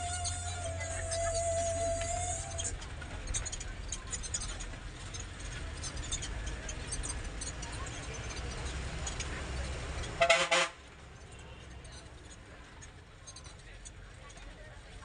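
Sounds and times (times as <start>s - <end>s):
bus engine drone: 0.0s - 15.0s.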